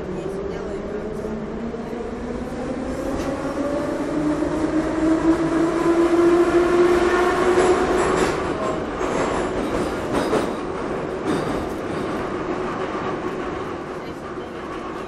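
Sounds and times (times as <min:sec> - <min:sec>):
train wheels rumbling on rail: 0:00.0 - 0:15.0.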